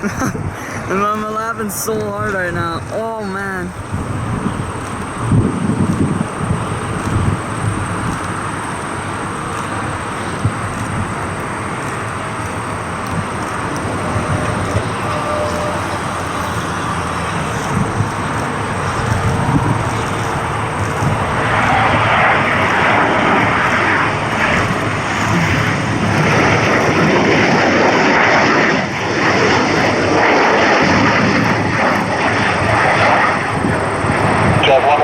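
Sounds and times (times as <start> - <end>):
aircraft engine rush: 0.0 - 35.0.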